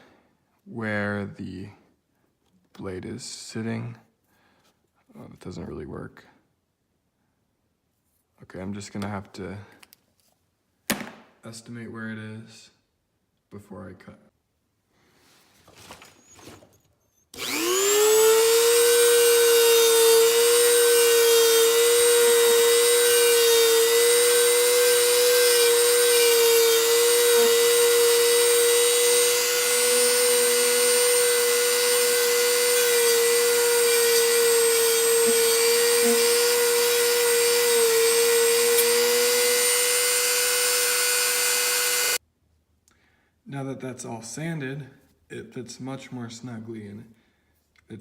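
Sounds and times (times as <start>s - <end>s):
power tool high-pitched whine: 17.4s - 42.2s.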